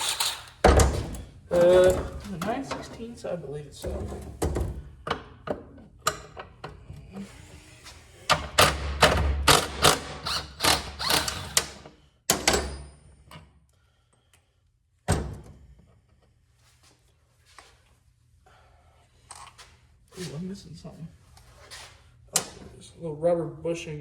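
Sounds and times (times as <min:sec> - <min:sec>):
socket ratchet clicking: 0:00.0 - 0:00.6.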